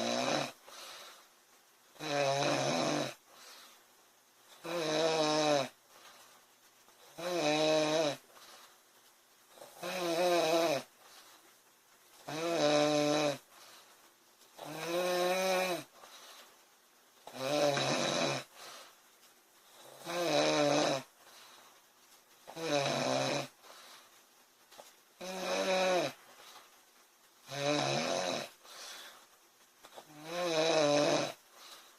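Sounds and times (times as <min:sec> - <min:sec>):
woman snoring: 0:00.0 - 0:00.9, 0:02.0 - 0:03.2, 0:04.6 - 0:05.8, 0:07.0 - 0:08.2, 0:09.6 - 0:10.9, 0:12.2 - 0:13.5, 0:14.6 - 0:16.0, 0:17.3 - 0:18.6, 0:19.8 - 0:21.1, 0:22.5 - 0:23.6, 0:25.2 - 0:26.2, 0:27.5 - 0:28.6, 0:30.0 - 0:31.4.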